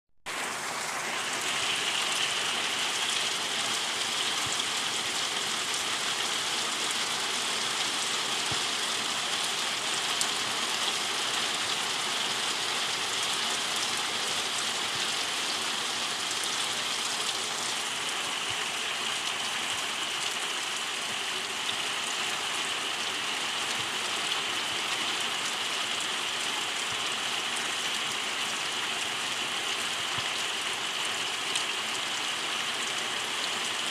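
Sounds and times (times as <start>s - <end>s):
heavy rain falling: 0.3s - 33.9s.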